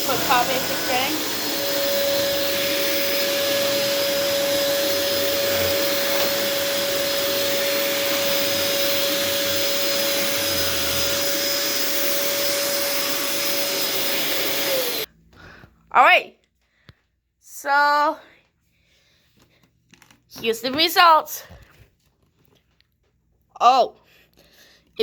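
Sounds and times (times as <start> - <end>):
vacuum cleaner running on carpet: 0.0 - 15.1.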